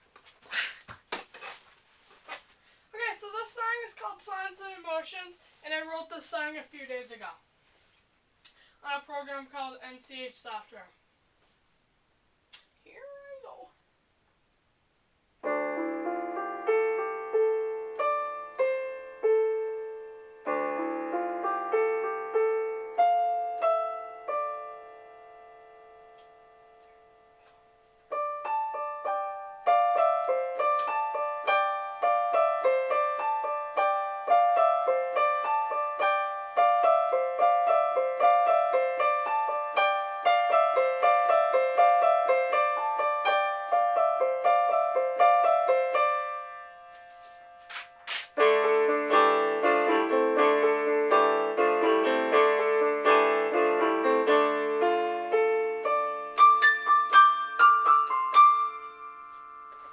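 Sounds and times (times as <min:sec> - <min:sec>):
solo piano music: 0:15.4 - 0:59.9.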